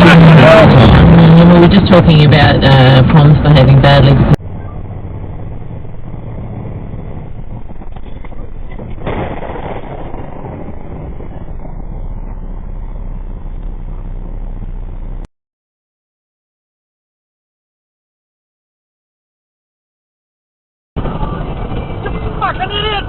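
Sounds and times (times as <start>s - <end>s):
car engine and road noise: 0.0s - 15.3s, 21.0s - 23.0s.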